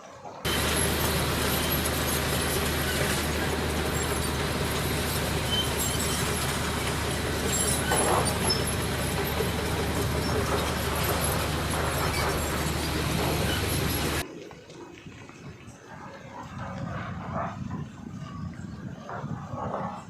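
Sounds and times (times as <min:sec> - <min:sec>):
heavy machinery diesel engine: 0:00.4 - 0:14.2.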